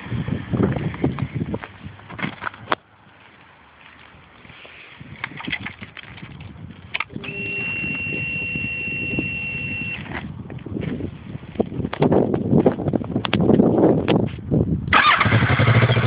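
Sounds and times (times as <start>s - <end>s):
high-pitched electronic beep: 7.2s - 10.0s.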